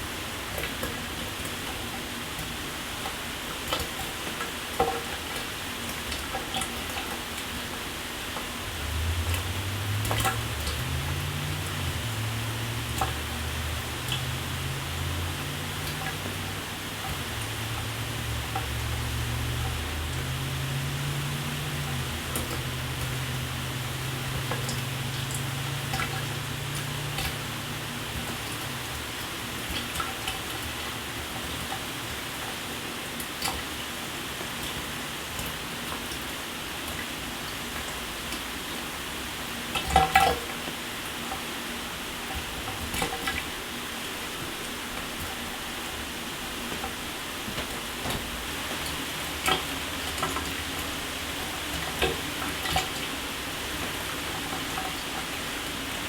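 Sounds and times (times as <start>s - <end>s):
water splashing: 8.2s - 30.8s, 42.6s - 56.0s.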